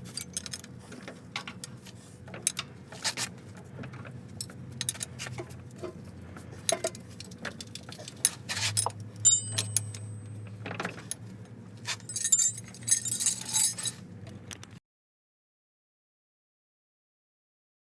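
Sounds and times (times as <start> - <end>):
metal tools clinking: 0.0 - 0.7, 7.6 - 10.3, 11.9 - 14.0
short metallic ring: 9.3 - 10.3, 12.1 - 14.0.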